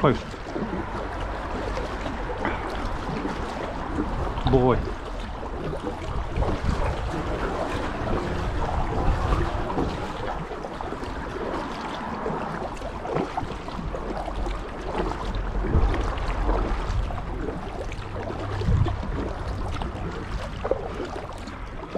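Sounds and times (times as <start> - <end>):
paddle splashing in water: 0.0 - 21.9
wind buffeting microphone: 0.0 - 21.9.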